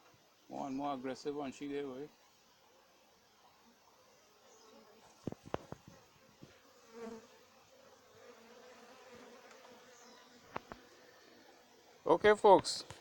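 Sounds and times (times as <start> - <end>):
honeybees buzzing: 0.2 - 12.1.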